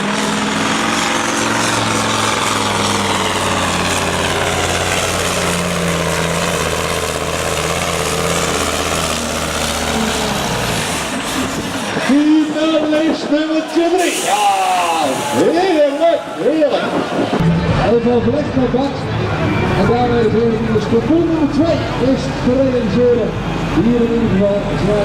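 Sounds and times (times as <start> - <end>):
truck engine at full throttle: 0.0 - 25.0.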